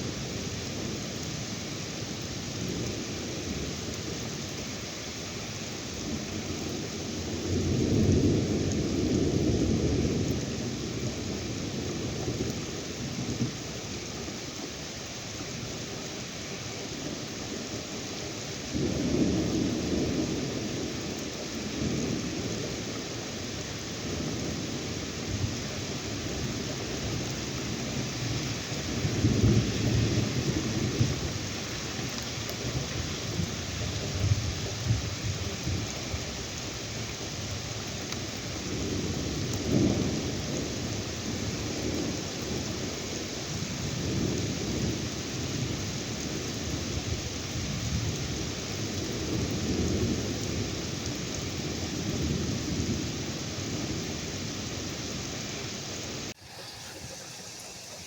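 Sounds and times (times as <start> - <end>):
heavy rain falling: 0.0 - 58.0
thunder rumbling: 24.1 - 36.5.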